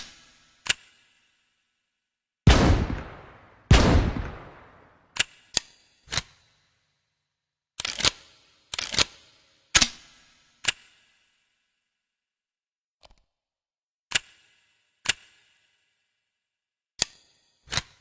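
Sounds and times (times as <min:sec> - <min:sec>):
shotgun blasts with echo: 0:02.5 - 0:05.0.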